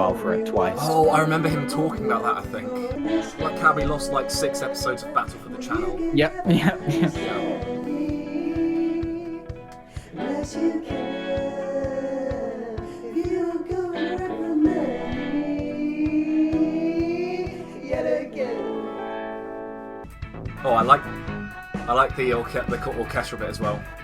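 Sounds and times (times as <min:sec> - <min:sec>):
person singing long notes: 0:00.0 - 0:19.4
steady low beat: 0:05.3 - 0:09.7.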